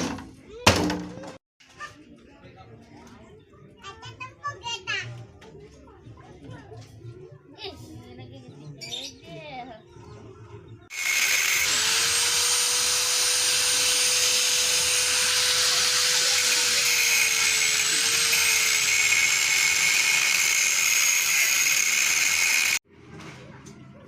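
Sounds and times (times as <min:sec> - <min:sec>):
power tool motor whine: 0:10.9 - 0:22.8.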